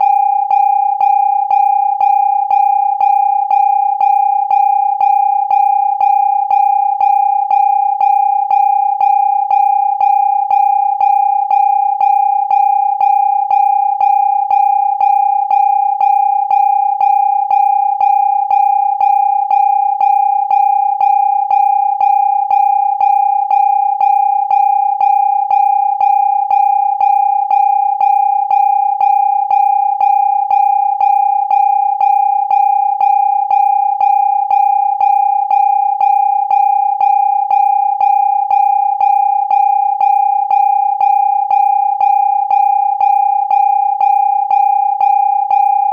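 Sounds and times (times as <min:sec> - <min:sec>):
pulsing electronic alarm tone: 0:00.0 - 0:45.9.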